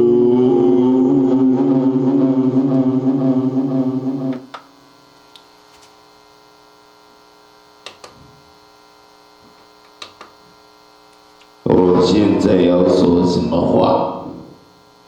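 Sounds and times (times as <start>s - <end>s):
voice-like pitched tone: 0.0s - 4.5s
electrical mains hum: 0.0s - 15.0s.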